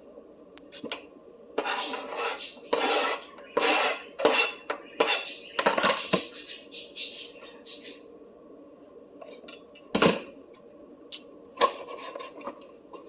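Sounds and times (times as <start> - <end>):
metal utensil scraping cookware: 1.6 - 5.4.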